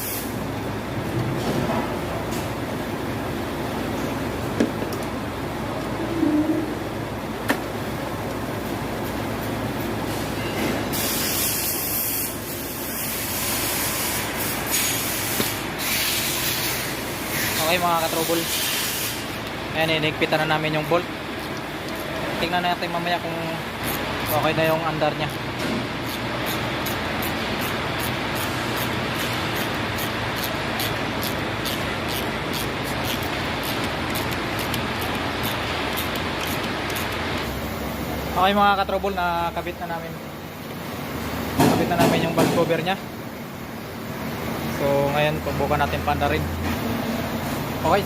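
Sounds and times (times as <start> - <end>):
rushing hissing noise: 0.0 - 0.4, 10.9 - 20.6
vehicle engine rumbling: 0.3 - 10.9, 19.3 - 48.0.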